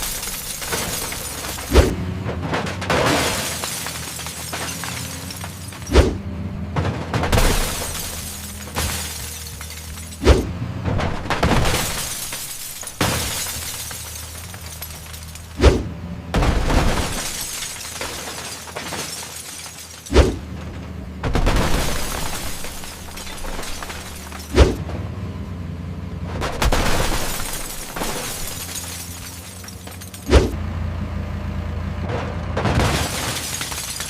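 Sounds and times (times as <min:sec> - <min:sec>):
glass shattering: 0:00.0 - 0:01.9, 0:02.6 - 0:06.1, 0:07.2 - 0:10.4, 0:11.1 - 0:15.6, 0:16.4 - 0:20.4, 0:21.3 - 0:24.8, 0:26.6 - 0:30.6, 0:32.6 - 0:34.0
cars being crushed: 0:00.0 - 0:25.4, 0:26.2 - 0:30.6, 0:32.0 - 0:34.0.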